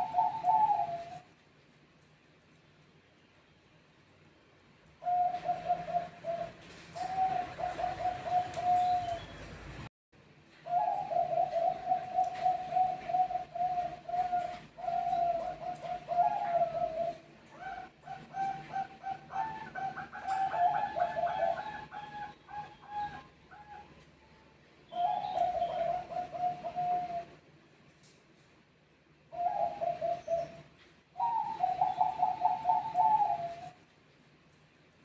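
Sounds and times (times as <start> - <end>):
doves cooing: 0.0 - 1.3, 5.0 - 9.5, 10.6 - 24.0, 24.9 - 27.4, 29.3 - 33.8.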